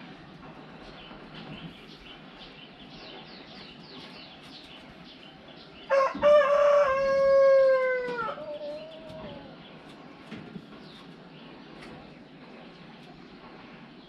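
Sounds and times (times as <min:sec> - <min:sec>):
small birds chirping: 0:00.0 - 0:06.4, 0:08.3 - 0:14.0
rooster crowing: 0:05.9 - 0:09.5.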